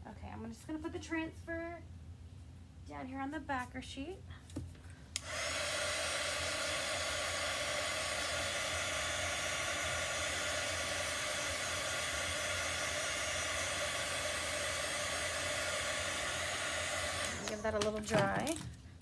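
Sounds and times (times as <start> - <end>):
blow dryer running: 5.2 - 18.6.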